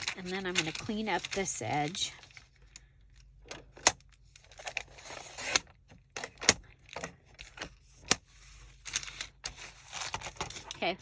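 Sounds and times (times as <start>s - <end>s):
paper rustling: 0.0s - 2.5s.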